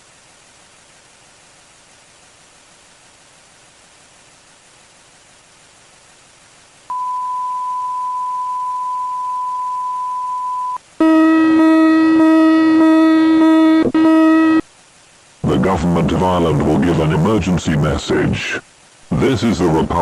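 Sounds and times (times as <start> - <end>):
static hiss: 0.0 - 20.0
steady single-pitched beep: 6.9 - 10.8
buzzy low alarm tone: 6.9 - 14.7.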